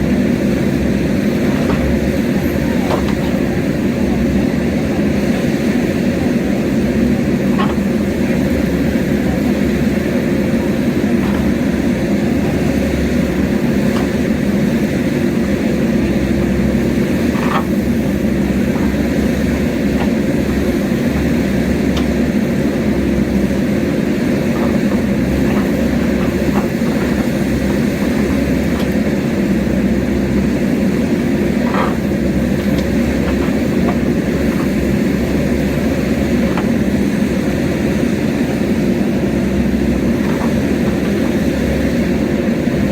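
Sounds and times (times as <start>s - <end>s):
diesel engine running: 0.0s - 42.9s
faint clicks and clanks: 7.0s - 8.7s, 16.0s - 29.8s, 30.4s - 37.6s.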